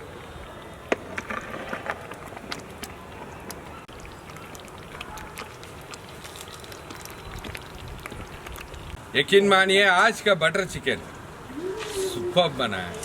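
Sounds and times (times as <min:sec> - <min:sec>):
gravy bubbling in a pot: 0:01.2 - 0:09.2.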